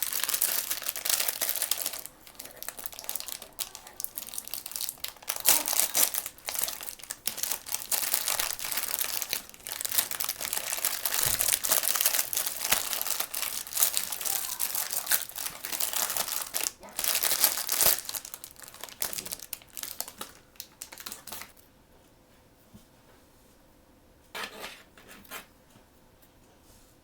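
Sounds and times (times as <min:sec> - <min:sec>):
plastic packaging crinkling: 0:00.0 - 0:21.6.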